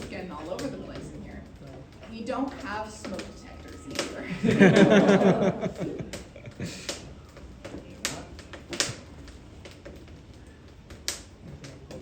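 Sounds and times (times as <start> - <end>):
coal fire crackling: 0.0 - 12.0
sharp pops: 6.0 - 12.0.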